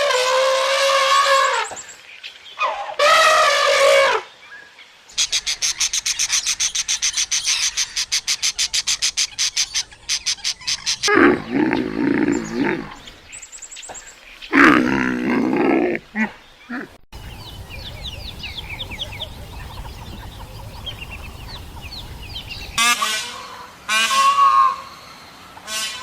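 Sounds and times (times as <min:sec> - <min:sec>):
low rumble: 0:17.2 - 0:22.8
poultry calling loudly: 0:17.2 - 0:23.1.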